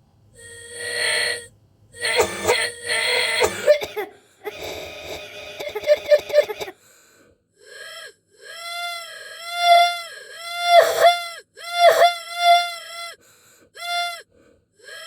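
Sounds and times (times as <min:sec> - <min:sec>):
short pitched vocal sound: 0:00.4 - 0:06.7
person coughing and hacking: 0:02.0 - 0:06.8.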